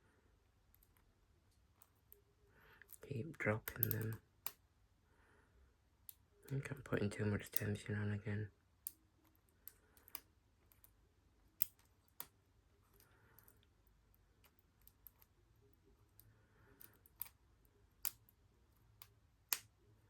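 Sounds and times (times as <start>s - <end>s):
lock pick metallic clicks: 3.6s - 4.6s, 9.6s - 10.9s, 11.6s - 13.7s, 16.1s - 17.4s, 18.0s - 18.4s, 19.0s - 19.8s.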